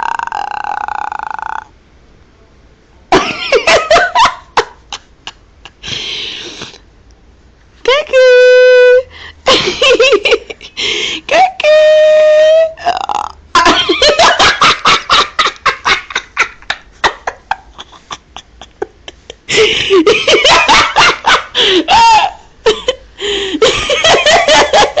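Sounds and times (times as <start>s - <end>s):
woman laughing hoarsely: 9.4s - 11.0s, 13.6s - 25.0s.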